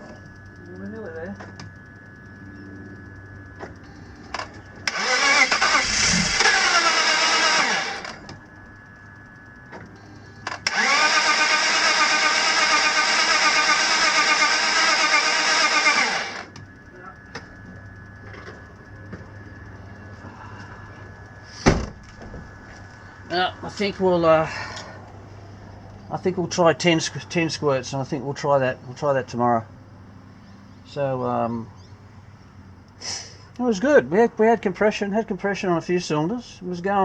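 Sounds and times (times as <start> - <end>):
engine cranking by starter: 3.0 - 8.5, 9.6 - 16.6.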